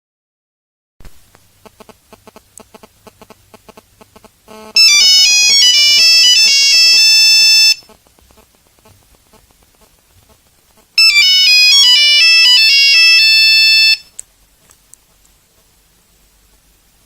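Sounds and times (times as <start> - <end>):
faint rapid ticking: 1.3 - 4.8, 7.8 - 11.8
beeping monophonic ringtone: 4.5 - 7.9, 11.0 - 14.1.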